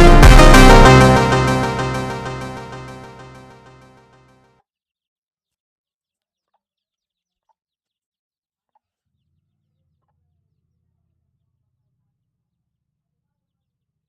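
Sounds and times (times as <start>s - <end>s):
low hum: 0.0s - 3.5s.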